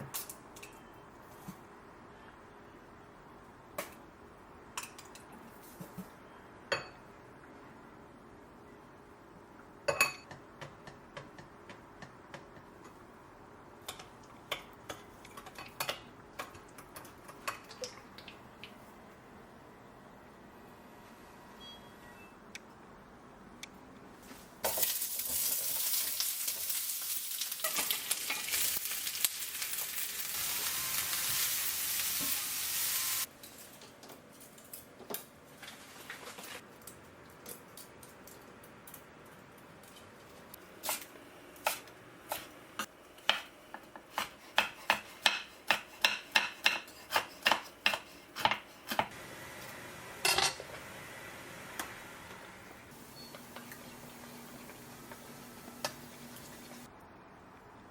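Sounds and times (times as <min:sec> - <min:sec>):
food sizzling in frying pan: 0:24.6 - 0:33.3, 0:52.9 - 0:56.9.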